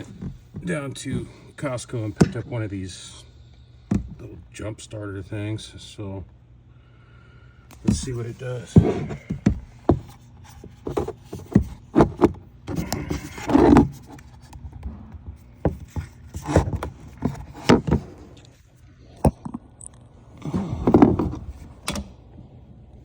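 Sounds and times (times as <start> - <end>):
equipment knocks and scrapes: 7.8 - 18.4.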